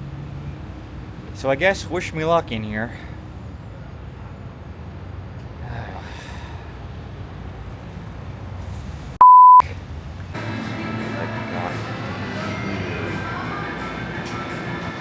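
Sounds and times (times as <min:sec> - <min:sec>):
censor bleep tone: 0:09.2 - 0:09.6.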